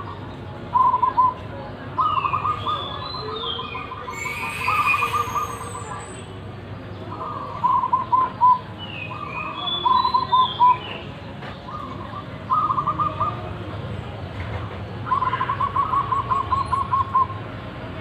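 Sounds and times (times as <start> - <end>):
dove cooing: 7.1 - 8.7, 11.7 - 13.6, 15.0 - 17.4.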